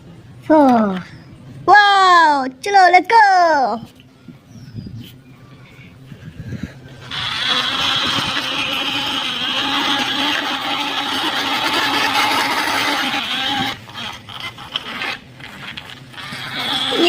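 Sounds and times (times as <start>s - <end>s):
small motor running: 5.5s - 17.0s.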